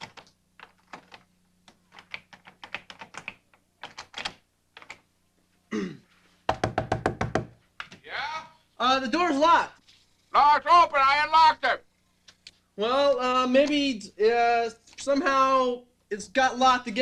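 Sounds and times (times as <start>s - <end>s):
loud banging on door: 6.5s - 7.6s.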